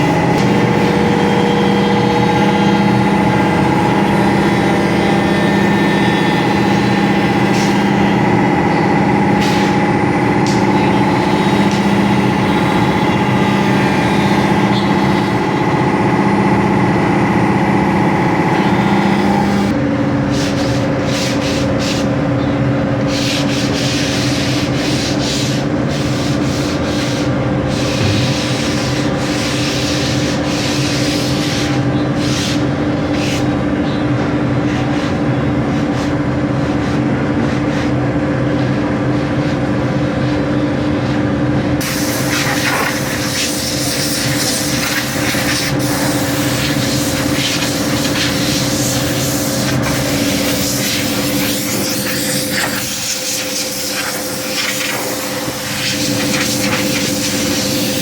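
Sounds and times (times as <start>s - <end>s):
woodworking machinery humming: 0.0s - 20.2s, 22.9s - 58.0s
hiss: 41.8s - 58.0s.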